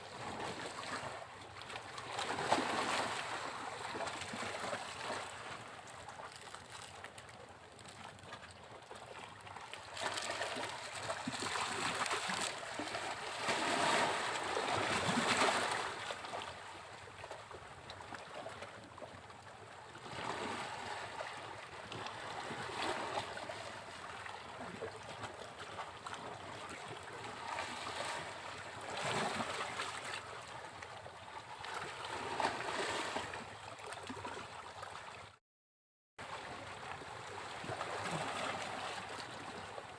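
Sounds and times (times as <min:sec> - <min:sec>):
sea waves breaking on beach: 0:02.0 - 0:06.5, 0:09.8 - 0:16.4.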